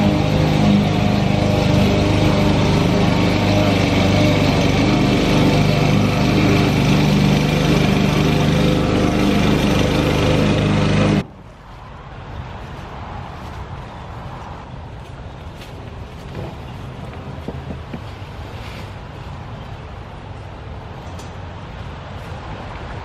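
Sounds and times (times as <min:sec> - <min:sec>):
lawn mower engine running: 0:00.0 - 0:11.2.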